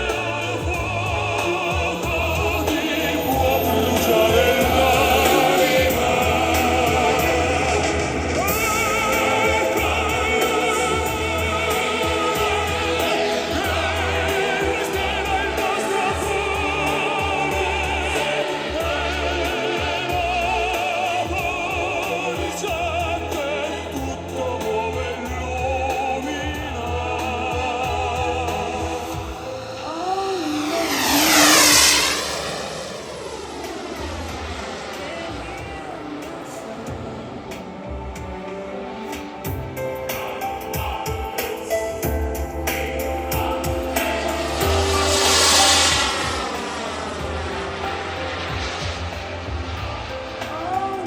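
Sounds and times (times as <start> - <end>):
operatic voice with vibrato: 0.0 - 32.8
steady musical accompaniment: 0.0 - 51.0.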